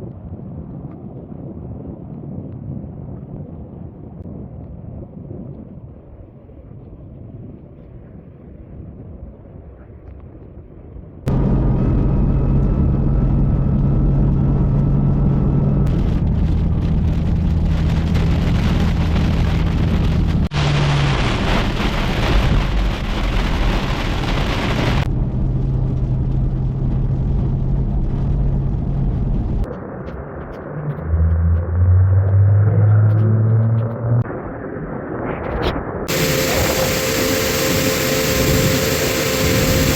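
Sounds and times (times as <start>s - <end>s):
car engine running: 11.3s - 21.8s, 36.1s - 39.9s
heavy rain hiss: 36.1s - 39.9s.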